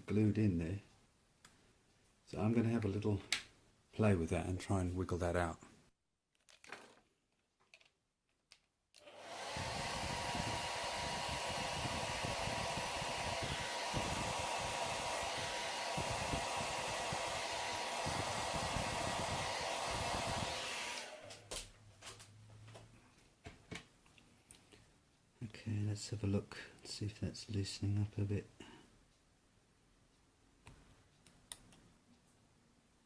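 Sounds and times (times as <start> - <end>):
hairdryer blowing with faint whine: 9.0 - 21.7.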